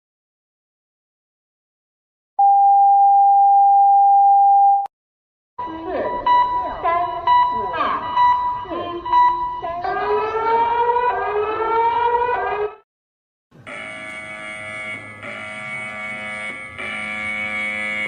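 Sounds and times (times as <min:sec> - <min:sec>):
harsh buzzing alert tone: 0:13.6 - 0:18.0
rising siren-like wail: 0:13.7 - 0:18.0.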